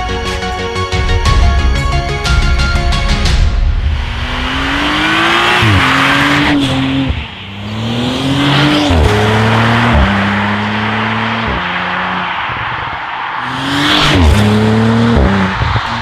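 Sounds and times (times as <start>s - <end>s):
car engine accelerating: 3.8s - 16.0s.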